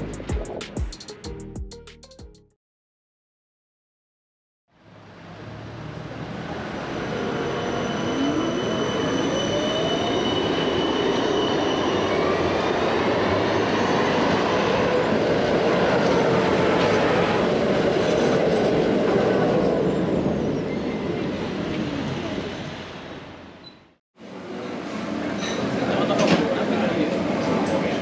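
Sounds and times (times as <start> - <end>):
wheel squeal: 7.0 - 15.0, 23.6 - 23.9.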